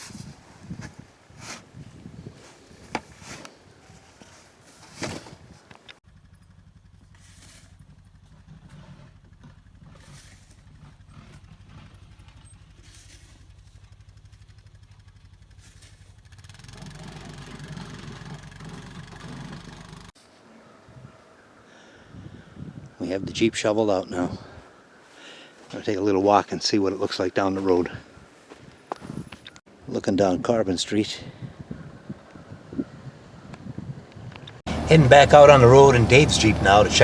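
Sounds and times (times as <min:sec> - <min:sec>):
vehicle engine idling: 0:06.0 - 0:20.2, 0:34.7 - 0:37.0.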